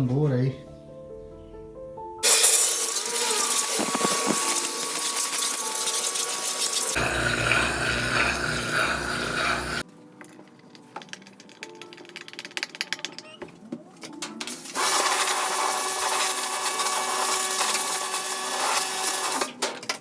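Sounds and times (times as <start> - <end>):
water jet spraying onto metal drum: 2.2 - 9.8, 14.6 - 19.5.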